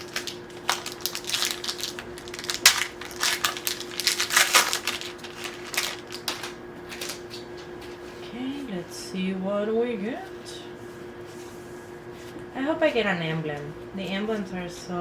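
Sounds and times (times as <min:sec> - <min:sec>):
foil wrapper crinkling and tearing: 0:00.0 - 0:07.4.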